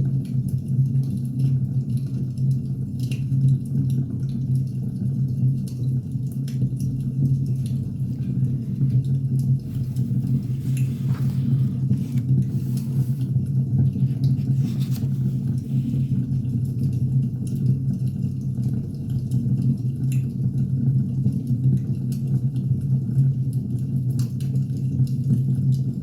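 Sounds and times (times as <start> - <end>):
wood fire rumbling: 5.5 - 18.6.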